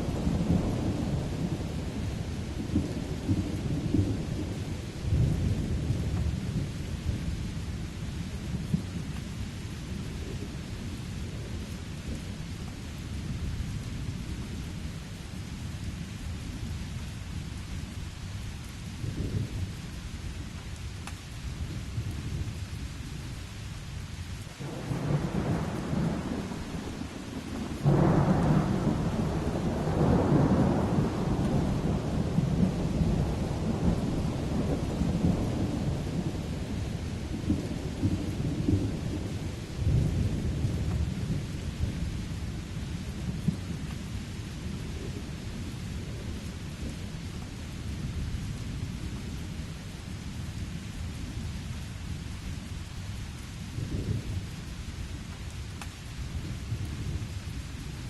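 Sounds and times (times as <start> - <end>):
steady rain: 0.0 - 58.0
rolling thunder: 24.6 - 44.0.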